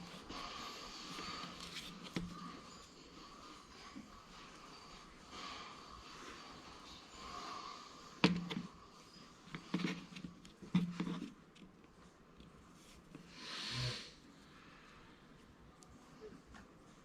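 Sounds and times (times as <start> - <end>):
brief rustling rub: 0.0 - 2.5.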